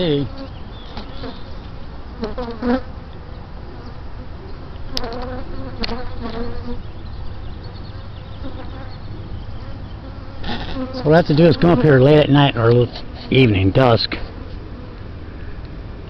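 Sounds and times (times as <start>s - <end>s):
honeybees buzzing: 0.0s - 15.4s
bee flying close past: 4.9s - 6.8s, 9.6s - 12.0s.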